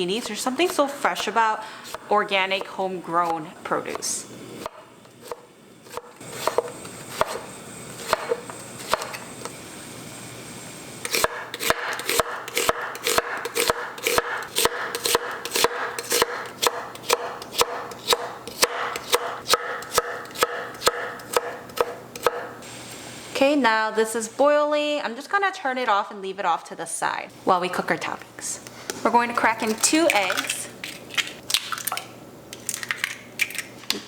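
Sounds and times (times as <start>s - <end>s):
knife chopping on cutting board: 4.6s - 9.2s, 11.1s - 22.6s.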